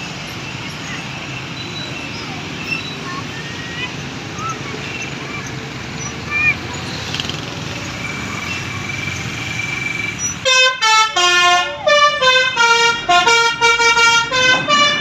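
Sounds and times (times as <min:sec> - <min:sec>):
vehicle noise: 0:00.0 - 0:15.0
musical bus horn melody: 0:10.4 - 0:15.0.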